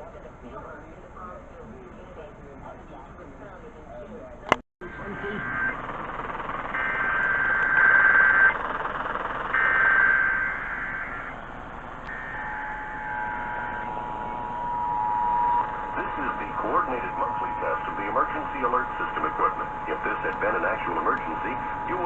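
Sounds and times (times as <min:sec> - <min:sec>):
buzzing digital data screech: 0:04.8 - 0:05.8, 0:06.7 - 0:08.6, 0:09.5 - 0:11.4, 0:12.1 - 0:22.0
two-tone attention signal: 0:04.8 - 0:05.8, 0:12.1 - 0:22.0
radio static hiss: 0:04.8 - 0:08.6, 0:12.1 - 0:22.0.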